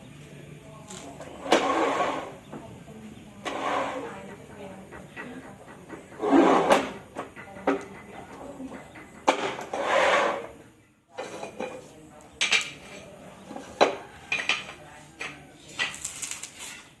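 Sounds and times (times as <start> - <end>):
tile cutter rasping scrape: 1.4 - 2.4, 9.6 - 10.6.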